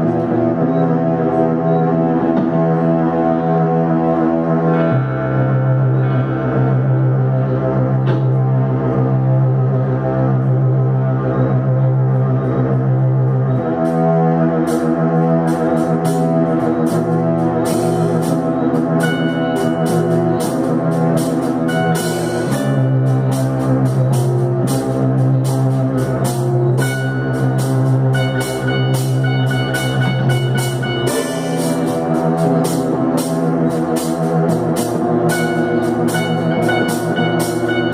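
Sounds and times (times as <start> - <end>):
psychedelic rock jam: 0.0 - 10.6, 13.3 - 37.9
drum and cymbal hits: 14.6 - 37.9.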